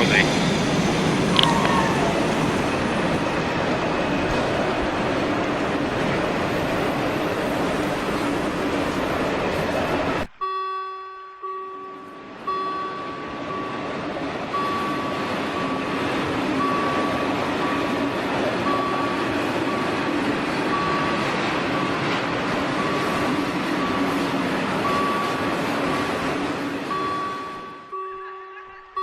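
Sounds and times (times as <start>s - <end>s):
train running noise: 0.0s - 10.4s, 12.0s - 29.0s
pitched tone: 1.2s - 3.4s.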